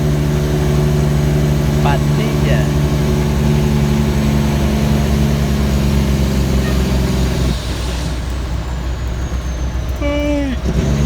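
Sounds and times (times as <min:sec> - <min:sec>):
truck diesel engine drone: 0:00.0 - 0:11.0.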